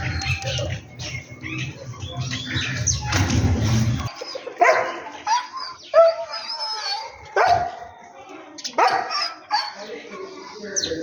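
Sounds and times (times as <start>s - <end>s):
sparrows chirping: 0.0s - 11.0s
dog barking: 4.6s - 6.3s, 7.3s - 7.8s, 8.8s - 9.8s.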